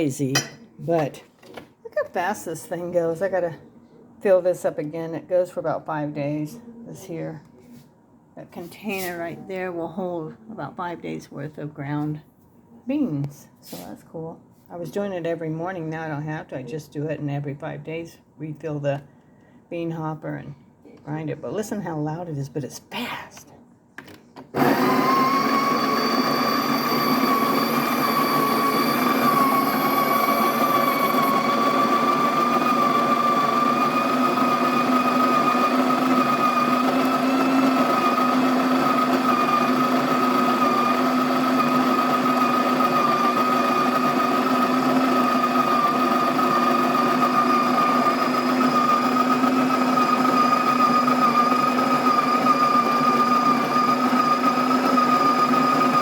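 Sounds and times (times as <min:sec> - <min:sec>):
coffee grinder motor whining: 0:24.6 - 0:56.0.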